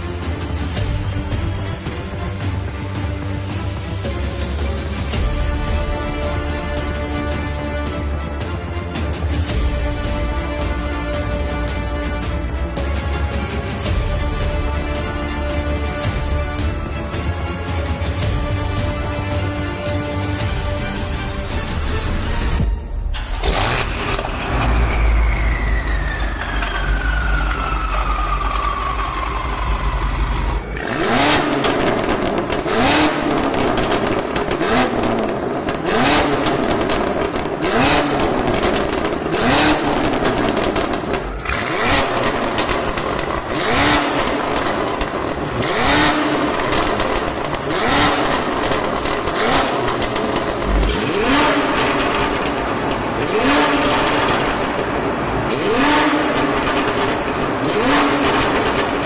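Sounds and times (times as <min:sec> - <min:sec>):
car engine revving in blips: 0:26.5 - 0:59.0.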